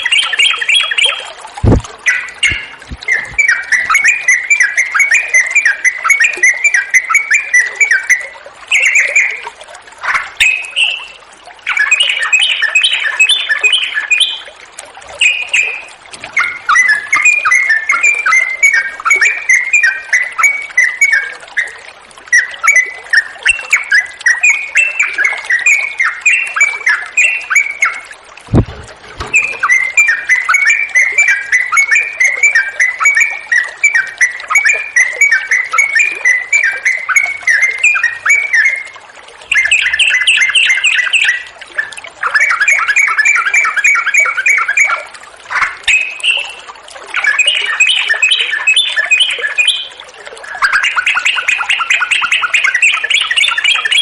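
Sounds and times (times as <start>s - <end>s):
bulbul singing chattering notes: 0.0s - 9.4s, 23.5s - 41.5s
low thump: 1.6s - 3.4s, 28.5s - 29.5s.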